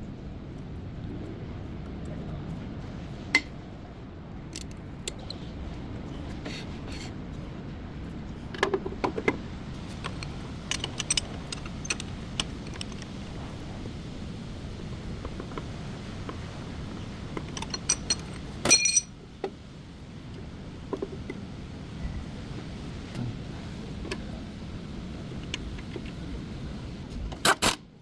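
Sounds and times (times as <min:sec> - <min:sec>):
low background hum: 0:00.0 - 0:28.0
light metallic clinks: 0:17.4 - 0:19.2.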